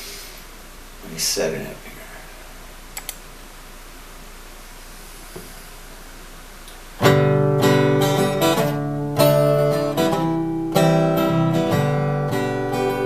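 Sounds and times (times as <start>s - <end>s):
acoustic guitar strumming chords: 7.0s - 13.0s.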